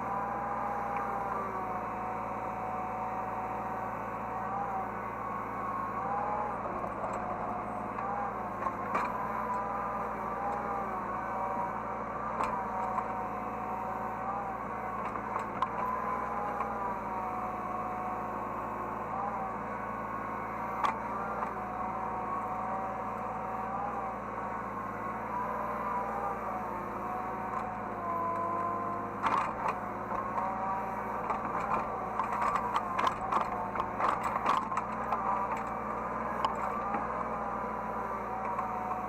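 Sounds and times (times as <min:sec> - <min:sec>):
excavator engine and hydraulic whine: 0:00.0 - 0:39.0.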